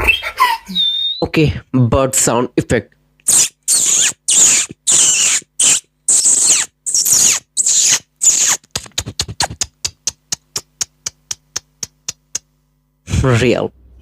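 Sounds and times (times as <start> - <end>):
beatboxer imitating bird chirps: 0.0 - 1.3, 3.2 - 12.5.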